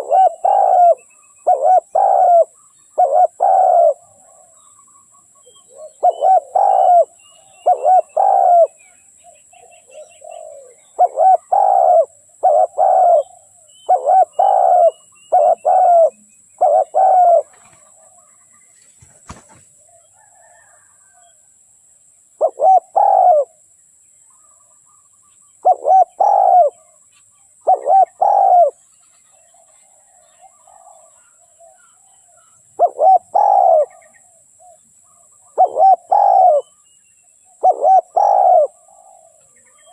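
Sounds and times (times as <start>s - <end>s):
dove cooing: 0.0s - 4.8s, 5.4s - 18.5s, 22.4s - 23.6s, 25.6s - 27.0s, 27.6s - 28.8s, 29.4s - 36.8s, 37.5s - 39.9s.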